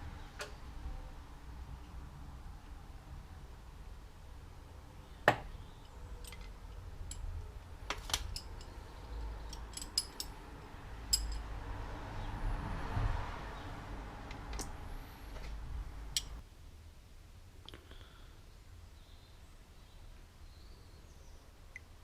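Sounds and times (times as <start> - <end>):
metal and glass parts clinking: 5.8 - 7.3, 8.0 - 8.8, 9.4 - 10.4, 11.1 - 11.4.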